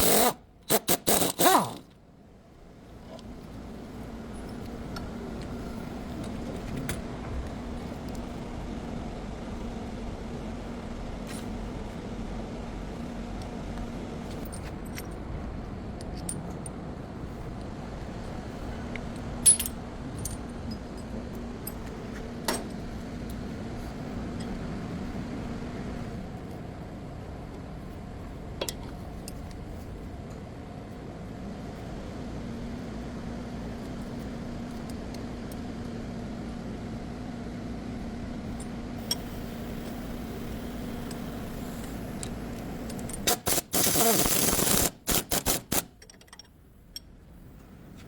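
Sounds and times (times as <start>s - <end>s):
steady low hum: 1.7s - 48.0s
light metallic clinks and taps: 19.5s - 21.9s.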